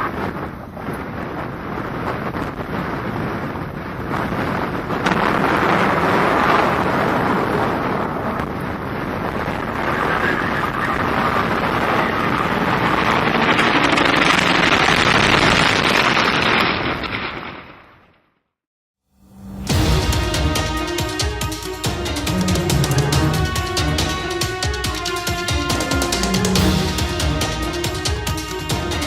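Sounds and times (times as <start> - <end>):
wind buffeting microphone: 0.0 - 16.3.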